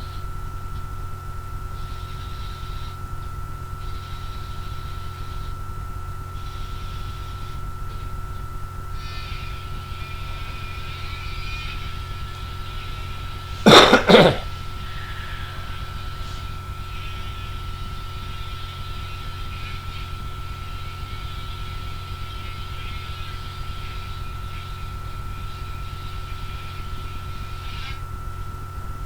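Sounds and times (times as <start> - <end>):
electrical hum: 0.0 - 29.0
person coughing: 13.7 - 14.5.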